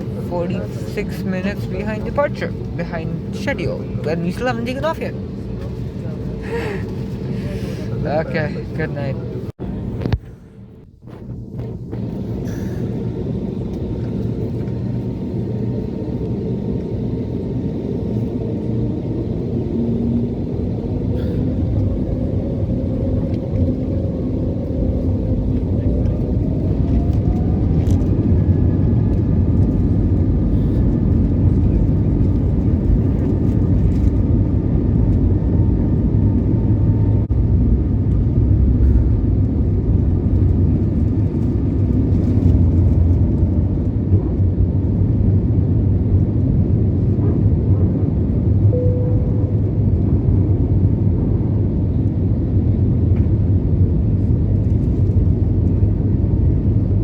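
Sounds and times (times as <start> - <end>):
aircraft cabin engine rumble: 0.0 - 57.0
short cabin tone: 48.7 - 50.2.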